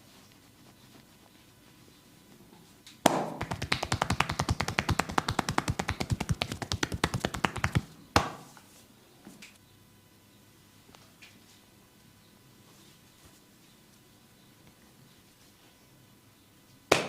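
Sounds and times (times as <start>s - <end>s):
loud slap on body: 3.0s - 6.1s
hands tapping on body: 3.1s - 8.4s.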